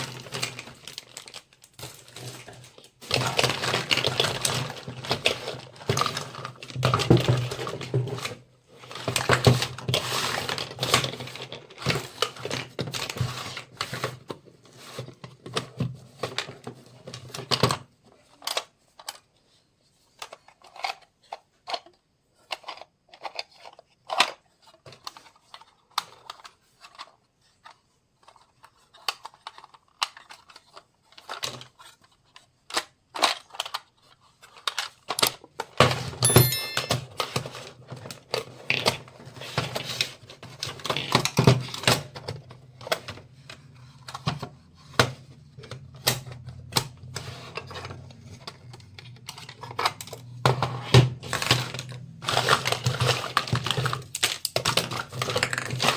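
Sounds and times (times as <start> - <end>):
plastic packaging crinkling and tearing: 0.0 - 6.9, 51.3 - 55.9.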